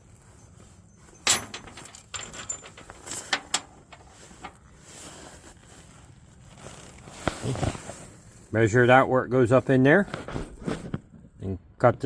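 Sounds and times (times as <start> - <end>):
tools and cable clicking and knocking: 1.1 - 4.6.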